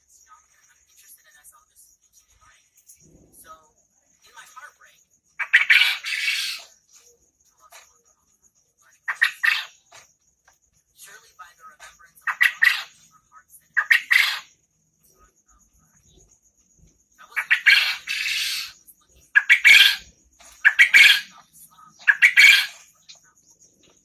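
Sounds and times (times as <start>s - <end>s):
quail calling: 5.4s - 6.7s, 9.0s - 9.8s, 12.2s - 13.1s, 13.7s - 14.5s, 17.2s - 23.1s.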